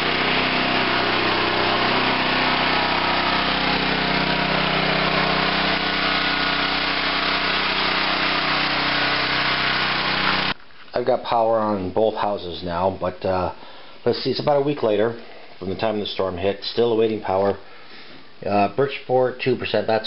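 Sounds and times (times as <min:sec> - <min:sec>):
small petrol engine running: 0:00.0 - 0:10.6.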